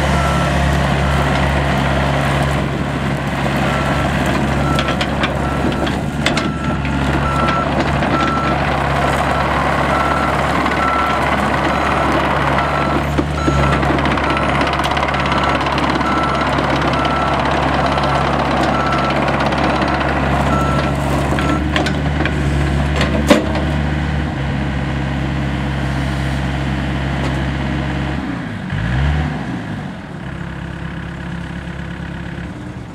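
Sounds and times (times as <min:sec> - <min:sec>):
excavator diesel engine running: 0:00.0 - 0:32.9.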